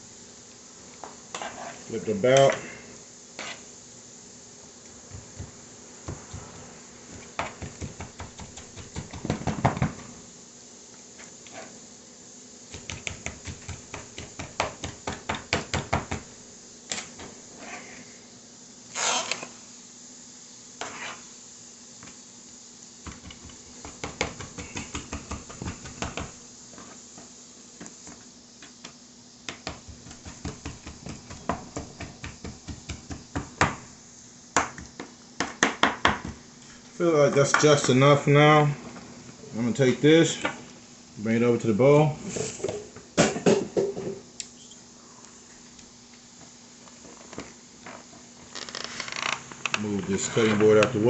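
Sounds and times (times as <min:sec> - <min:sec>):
knife scraping board: 0:01.3 - 0:01.9, 0:03.4 - 0:03.7, 0:17.5 - 0:18.1, 0:20.8 - 0:21.3
knife chopping on cutting board: 0:07.1 - 0:10.0, 0:12.7 - 0:16.3, 0:23.1 - 0:26.3, 0:29.5 - 0:33.8.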